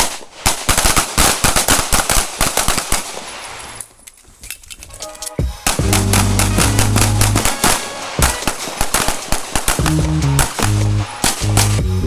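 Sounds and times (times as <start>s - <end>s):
handgun shots: 0.0s - 11.9s
music: 5.0s - 12.0s.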